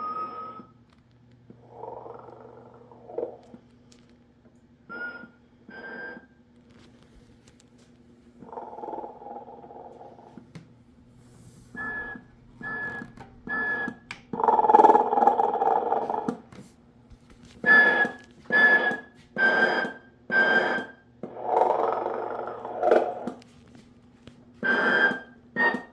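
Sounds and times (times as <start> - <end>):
rasping toy snores: 1.6 - 3.4, 21.3 - 23.4.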